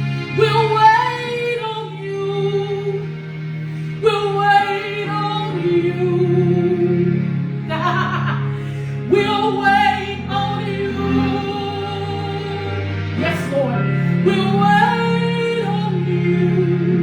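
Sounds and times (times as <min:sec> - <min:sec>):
sustained keyboard chords: 0:00.0 - 0:17.0
woman singing: 0:00.4 - 0:03.1, 0:04.0 - 0:07.1, 0:07.7 - 0:17.0.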